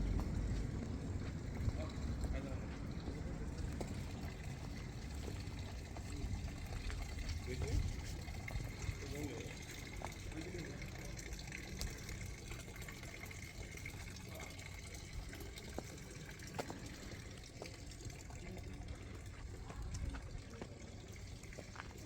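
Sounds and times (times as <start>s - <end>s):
running water rushing: 0.0s - 22.0s.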